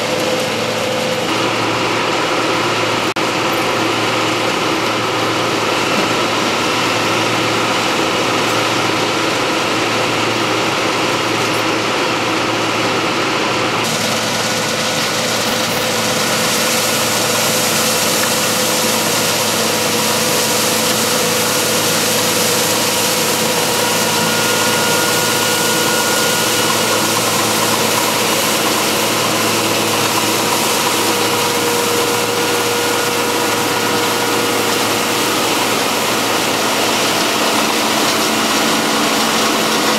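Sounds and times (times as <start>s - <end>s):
farm machinery engine hum: 0.0s - 39.9s
machine whining tones: 13.8s - 39.9s.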